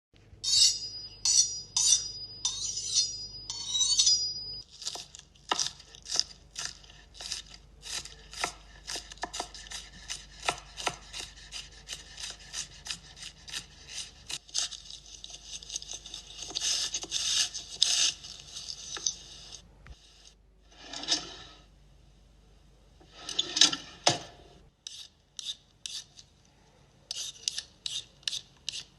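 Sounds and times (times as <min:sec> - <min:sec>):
knife chopping on cutting board: 0:05.5 - 0:13.6.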